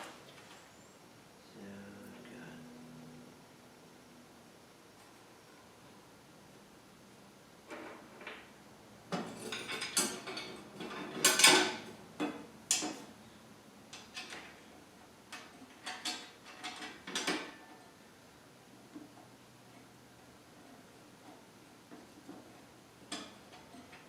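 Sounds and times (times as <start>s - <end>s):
metal parts clinking and rattling: 9.3s - 11.8s.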